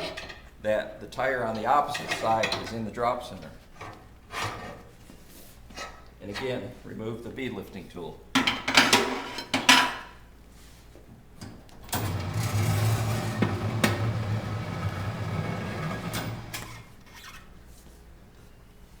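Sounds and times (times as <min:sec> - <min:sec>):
turntable motor humming: 0:11.8 - 0:17.1.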